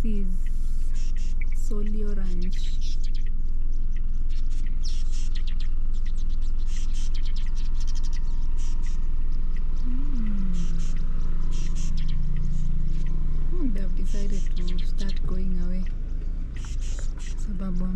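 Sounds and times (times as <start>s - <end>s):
birds chirping: 0.0s - 17.9s
steady low hum: 0.0s - 17.9s
low moaning tone: 9.0s - 17.9s.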